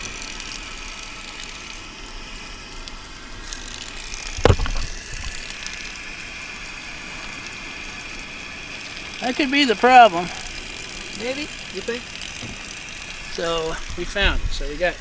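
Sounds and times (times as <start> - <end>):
sharp knock: 4.4 - 4.9.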